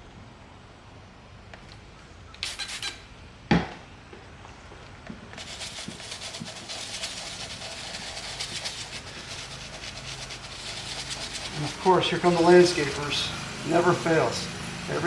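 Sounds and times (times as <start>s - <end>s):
low engine hum: 4.6s - 15.0s
power equipment rushing noise: 5.4s - 15.0s.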